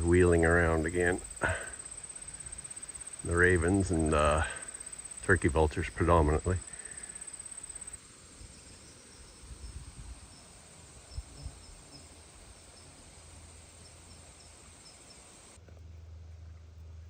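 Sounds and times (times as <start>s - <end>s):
insects trilling: 0.0s - 15.6s
steady low hum: 0.0s - 17.0s
wind rumble on microphone: 9.3s - 10.4s.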